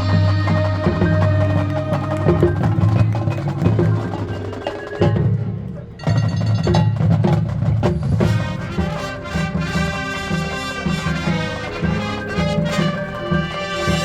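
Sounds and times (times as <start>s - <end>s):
brass section playing chords: 0.0s - 3.1s, 8.2s - 14.0s
percussion strokes: 0.0s - 14.0s.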